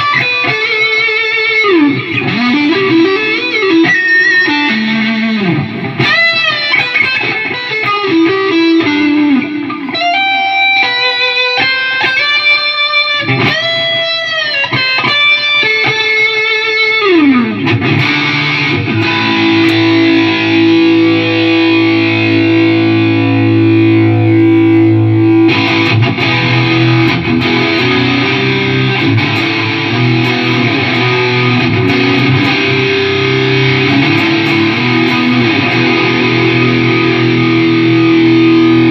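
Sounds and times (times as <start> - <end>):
electric guitar lead lines and chords: 0.0 - 38.9.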